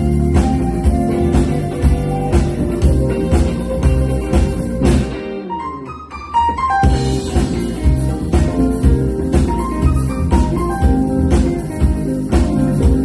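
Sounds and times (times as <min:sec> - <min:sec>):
jazz-funk band playing: 0:00.0 - 0:13.0.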